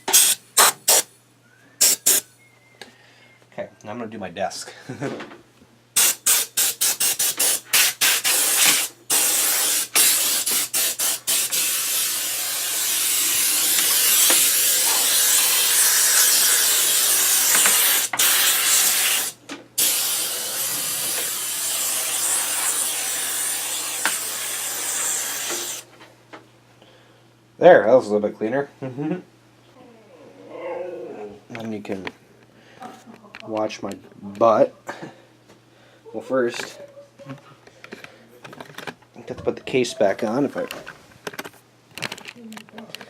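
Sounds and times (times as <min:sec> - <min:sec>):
air blow gun blasts: 0:00.0 - 0:01.1, 0:06.0 - 0:25.8.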